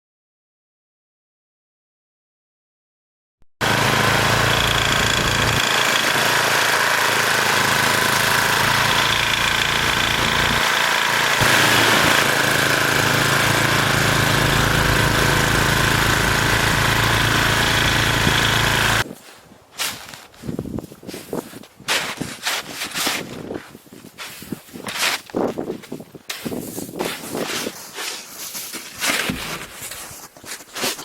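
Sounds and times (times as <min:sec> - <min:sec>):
snowblower engine running: 0:03.6 - 0:19.1
hiss of blowing snow: 0:05.2 - 0:19.0.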